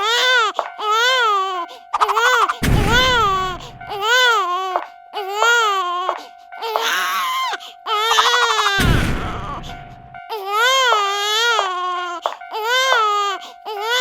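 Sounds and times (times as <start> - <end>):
cartoon wailing cries: 0.0 - 9.7
low rumble: 2.6 - 4.0, 8.8 - 10.3.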